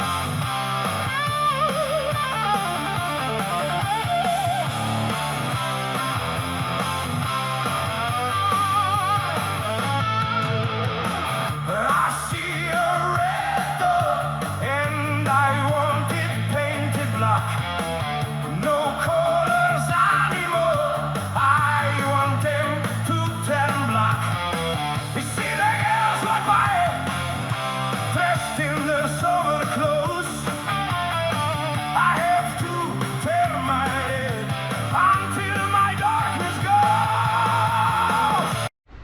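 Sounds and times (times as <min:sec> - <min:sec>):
bass line: 0:00.0 - 0:39.0
rock guitar: 0:00.0 - 0:39.0
male voice singing: 0:11.6 - 0:17.8, 0:18.4 - 0:24.4, 0:25.0 - 0:38.7.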